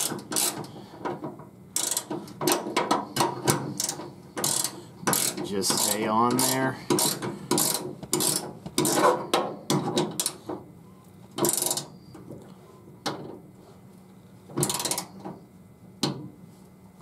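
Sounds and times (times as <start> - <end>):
ratchet wrench clicking: 0.0 - 0.6, 1.8 - 2.1, 3.8 - 9.0
scraping and handling hardware: 0.0 - 10.6.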